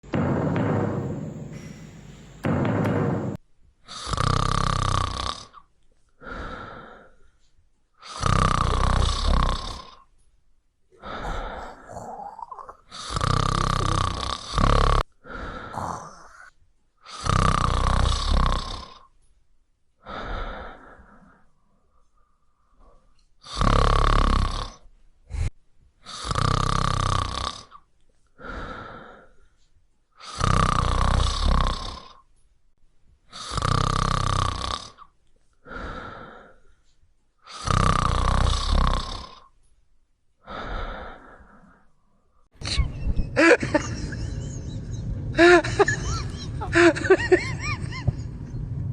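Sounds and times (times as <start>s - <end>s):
woman snoring loudly: 3.9s - 5.6s, 8.0s - 10.0s, 11.0s - 16.5s, 17.1s - 19.0s, 23.5s - 24.8s, 26.1s - 27.7s, 30.2s - 32.2s, 33.4s - 35.0s, 37.5s - 39.4s, 43.4s - 44.2s, 45.3s - 47.7s.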